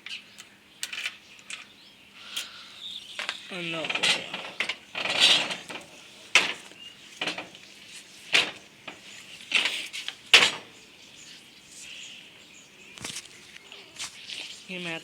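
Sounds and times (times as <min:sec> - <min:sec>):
motorcycle parts clattering: 0:03.2 - 0:10.8.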